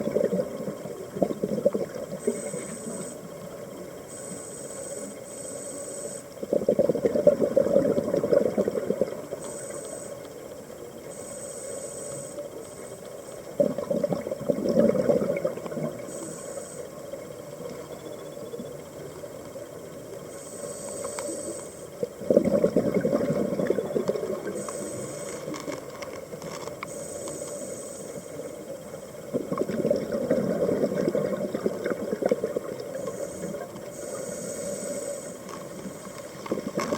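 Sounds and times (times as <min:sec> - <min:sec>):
exhaled bubbles underwater: 0:00.0 - 0:03.9, 0:06.4 - 0:09.9, 0:13.4 - 0:20.3, 0:21.8 - 0:26.1, 0:28.3 - 0:36.9
steady underwater hiss: 0:00.0 - 0:36.9.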